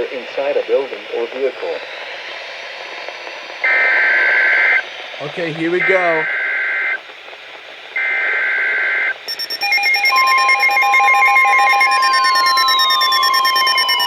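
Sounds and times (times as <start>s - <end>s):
screeching data burst: 1.4s - 7.0s, 8.0s - 14.0s
steady warning alarm tone: 3.6s - 7.0s, 8.0s - 14.0s
pulsing alternating beep: 8.0s - 14.0s.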